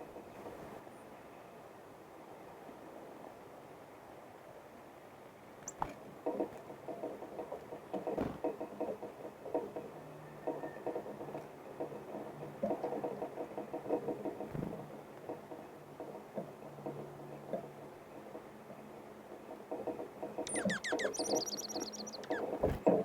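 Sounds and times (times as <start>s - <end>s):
birds pecking at seed: 5.6s - 9.9s, 19.7s - 23.0s.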